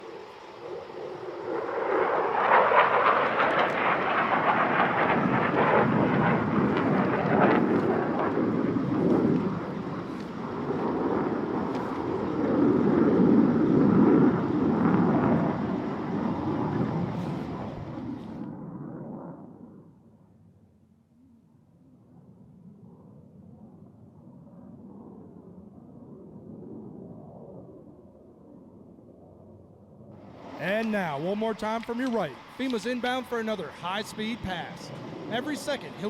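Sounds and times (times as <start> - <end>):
fighter jet roar: 0.0 - 18.6, 30.2 - 36.0.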